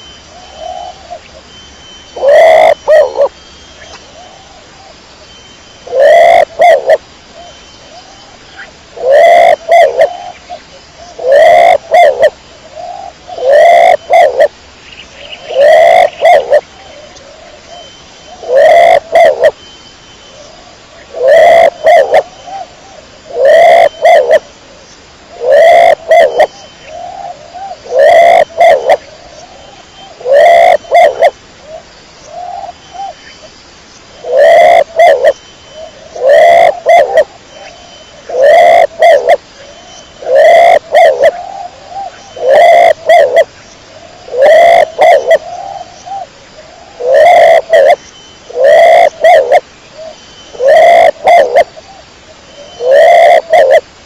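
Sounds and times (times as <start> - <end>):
pigeon cooing: 2.2 - 3.3, 5.9 - 7.0, 9.0 - 10.4, 11.2 - 14.5, 15.4 - 17.5, 18.4 - 19.6, 21.1 - 22.7, 23.3 - 24.4, 25.4 - 29.1, 30.2 - 31.4, 34.2 - 35.4, 36.2 - 37.3, 38.3 - 39.4, 40.2 - 43.5, 44.2 - 49.6, 50.6 - 51.7, 52.6 - 53.8.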